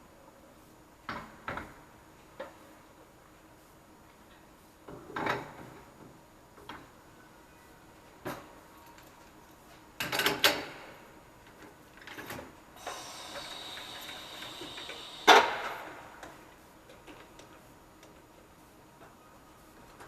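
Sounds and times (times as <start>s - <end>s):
balancing machine high whine: 12.8s - 16.0s.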